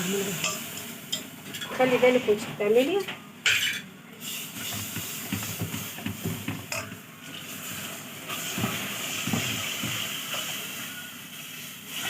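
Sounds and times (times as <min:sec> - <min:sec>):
roux hissing in a pan: 0:00.0 - 0:01.0, 0:04.2 - 0:12.0.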